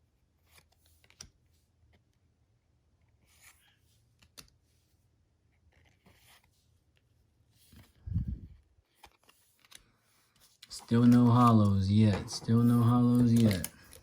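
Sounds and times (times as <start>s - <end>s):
cards rustling and clicking: 0.4s - 2.2s, 5.4s - 8.0s, 8.6s - 14.0s.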